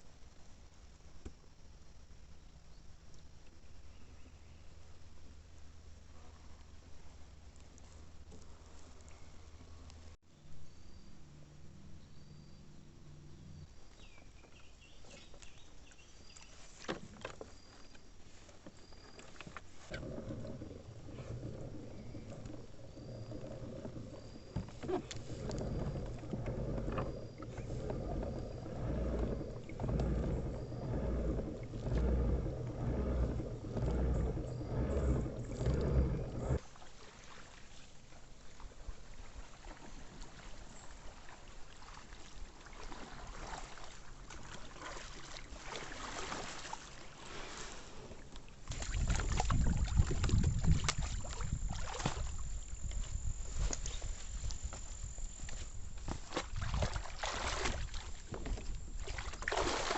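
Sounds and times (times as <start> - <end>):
kayak paddle strokes: 14.3 - 59.9
wash of water: 19.9 - 37.8, 42.8 - 52.8, 56.3 - 58.3, 59.0 - 59.9.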